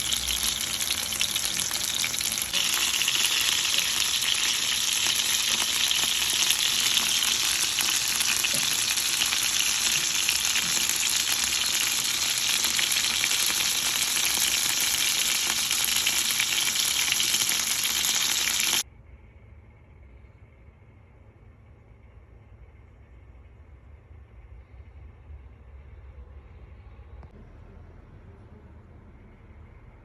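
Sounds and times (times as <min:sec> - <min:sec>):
food sizzling in hot oil: 0:00.0 - 0:18.8.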